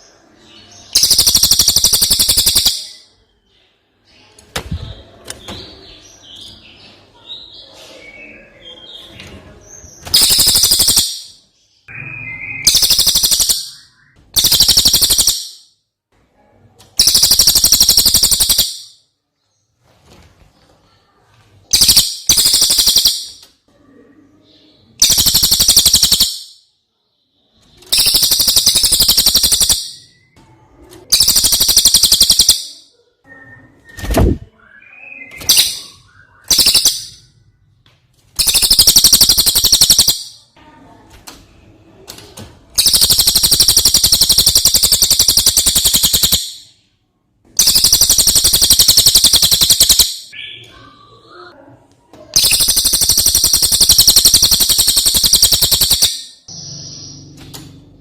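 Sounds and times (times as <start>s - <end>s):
songbird fast high chattering: 0.9s - 3.0s, 10.1s - 11.4s, 12.6s - 13.8s, 14.4s - 15.6s, 17.0s - 18.9s, 21.7s - 23.4s, 25.0s - 26.5s, 27.9s - 30.2s, 31.1s - 32.8s, 35.3s - 37.2s, 38.4s - 40.4s, 42.8s - 46.6s, 47.6s - 50.4s, 52.4s - 57.2s.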